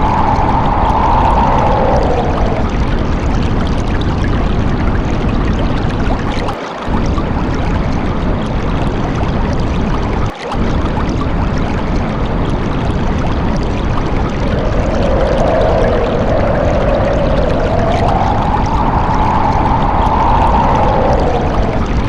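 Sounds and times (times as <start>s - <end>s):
heavy rain: 0.0s - 3.2s, 13.2s - 22.0s
wind howling: 0.0s - 4.0s, 13.0s - 22.0s.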